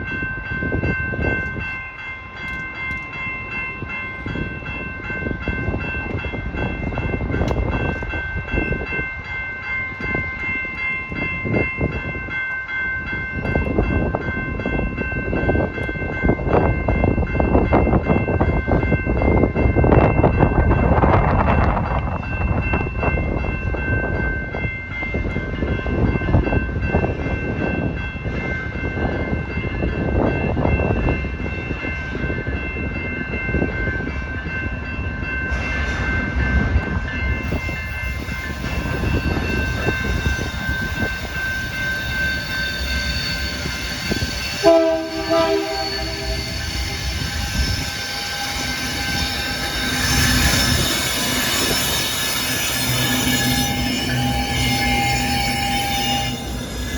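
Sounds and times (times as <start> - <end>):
train rumbling past: 0.0 - 56.9
high-pitched wheel squeal: 41.9 - 56.9
locomotive horn blast: 44.5 - 47.1.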